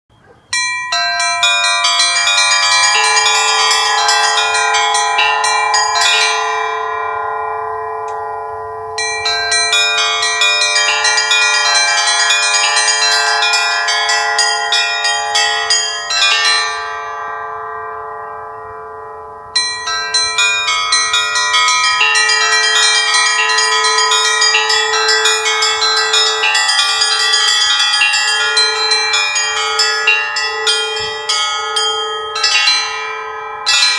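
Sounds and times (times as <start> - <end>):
large bell humming: 0.2 - 33.9
small church bells striking: 0.2 - 33.9.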